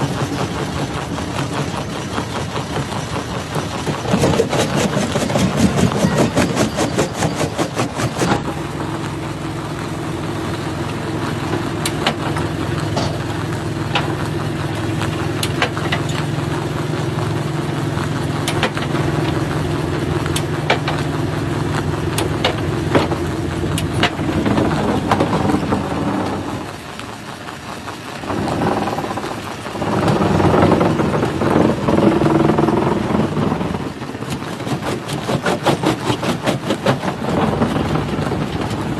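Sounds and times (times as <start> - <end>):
fast rattle: 0.0 - 9.4, 10.0 - 38.9
crusher motor hum: 0.0 - 38.9.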